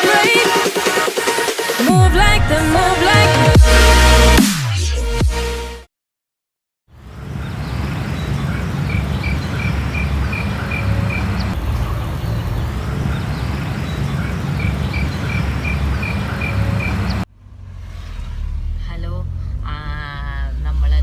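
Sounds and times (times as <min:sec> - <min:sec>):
low outdoor rumble: 0:07.2 - 0:21.0.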